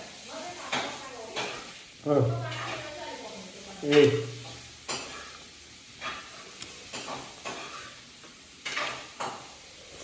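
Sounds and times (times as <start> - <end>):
utensils scraping a plate: 2.5 - 3.0, 3.8 - 10.0.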